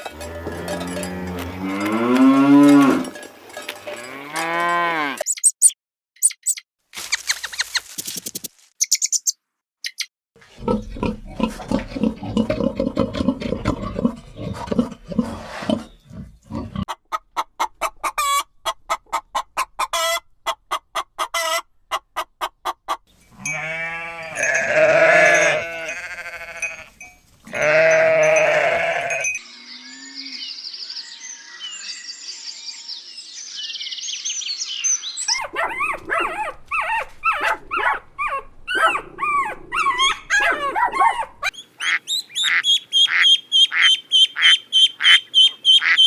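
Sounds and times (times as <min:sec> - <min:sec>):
goat bleating: 0:23.4 - 0:29.4.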